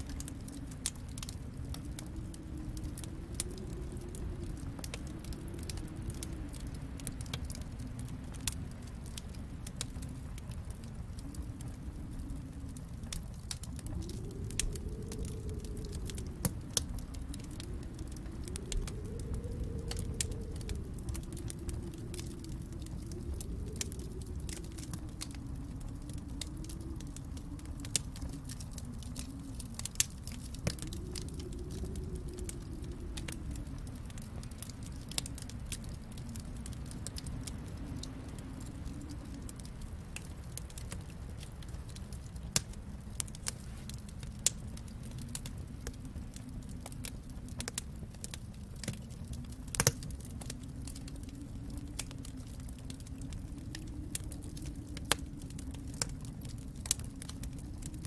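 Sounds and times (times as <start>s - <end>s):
low steady rumble of fire: 0.0s - 58.0s
wood fire crackling and popping: 0.0s - 58.0s.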